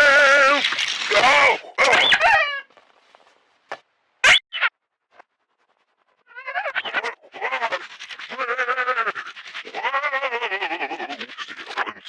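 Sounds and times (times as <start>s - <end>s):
warbling processed cartoon soundtrack: 0.0s - 2.6s, 4.2s - 4.7s, 6.3s - 12.0s.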